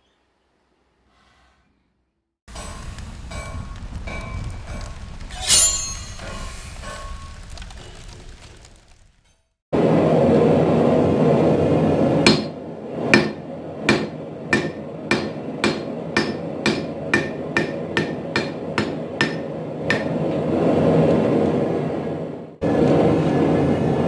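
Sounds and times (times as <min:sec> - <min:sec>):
hammer striking steel on anvil: 0:02.5 - 0:07.2, 0:12.3 - 0:20.4.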